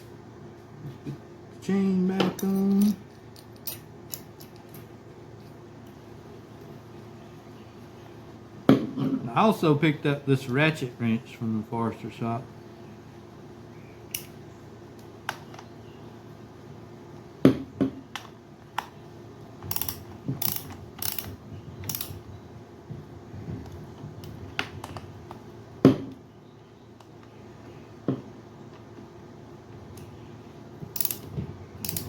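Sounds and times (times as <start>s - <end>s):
ratchet wrench clicking: 19.7s - 21.3s, 21.9s - 22.2s, 30.9s - 32.0s.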